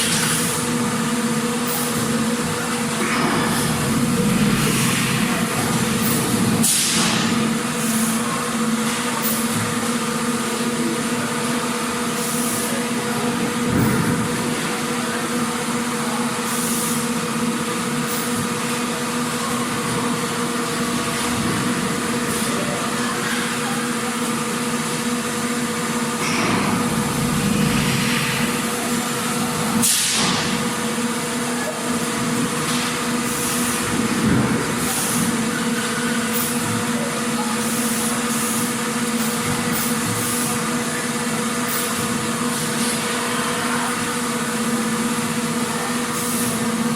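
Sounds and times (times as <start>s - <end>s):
machinery humming: 0.7s - 8.7s, 18.9s - 31.5s.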